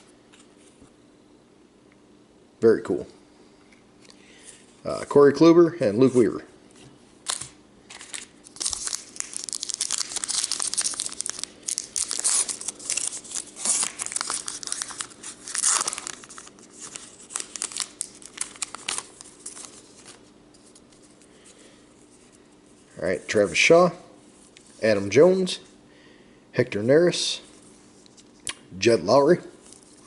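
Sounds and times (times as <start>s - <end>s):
foil wrapper tearing and crinkling: 7.3s - 20.2s.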